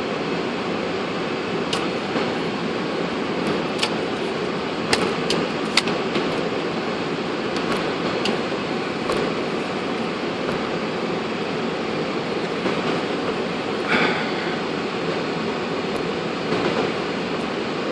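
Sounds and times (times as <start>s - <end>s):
sharp clicks and rattles: 3.4s - 6.5s, 7.5s - 8.5s.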